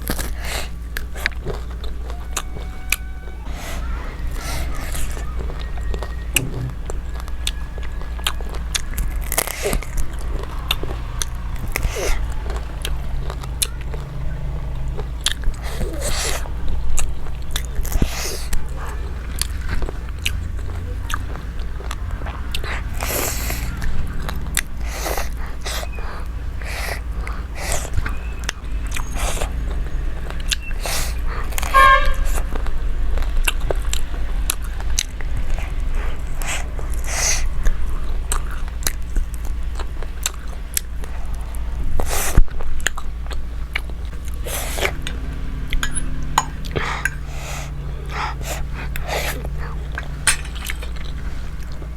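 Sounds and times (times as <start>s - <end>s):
chewing and biting: 0.0s - 51.9s
brief tooting tone: 2.1s - 6.9s, 31.7s - 32.4s.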